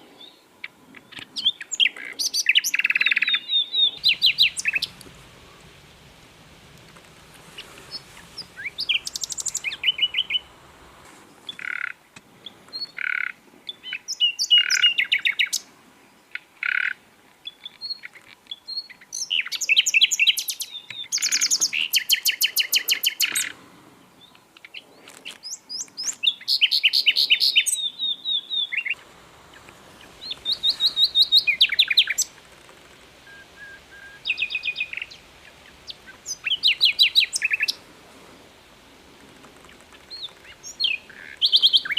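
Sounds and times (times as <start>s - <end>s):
bird chirps and trills: 1.0s - 6.3s, 7.4s - 10.6s, 25.5s - 32.4s, 33.2s - 37.8s, 39.6s - 41.9s.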